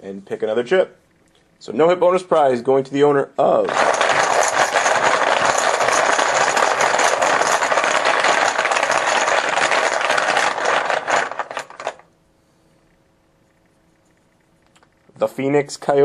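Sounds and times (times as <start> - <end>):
chips rattling in a container: 3.7 - 12.0.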